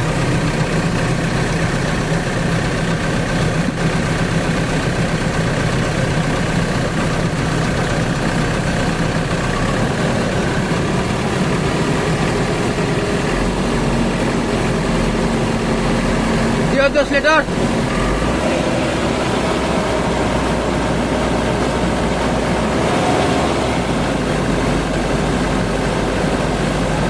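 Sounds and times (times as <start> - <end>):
excavator diesel engine running: 0.0 - 27.0.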